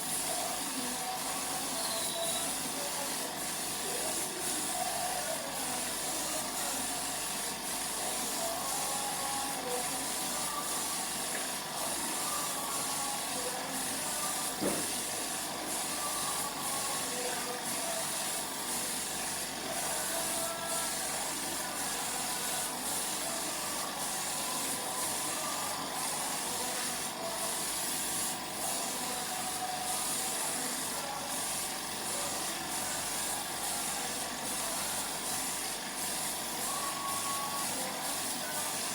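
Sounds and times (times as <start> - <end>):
air spray gun hissing: 0.0 - 38.9.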